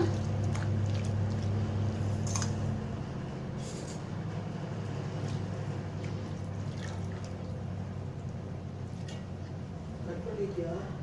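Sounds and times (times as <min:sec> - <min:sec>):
wet squishes and drips: 0:00.0 - 0:02.6, 0:05.9 - 0:09.6
steady low hum: 0:00.0 - 0:11.0.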